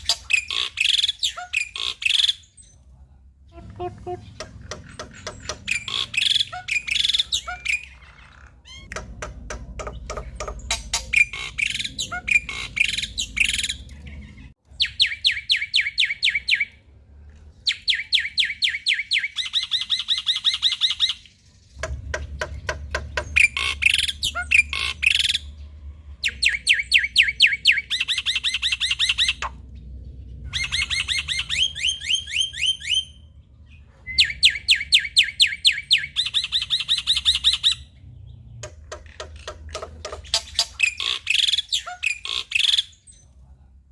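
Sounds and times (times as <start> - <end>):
bird chattering song: 0.0 - 2.8, 3.5 - 16.8, 17.6 - 43.4
harsh squawking chatter: 3.4 - 9.2.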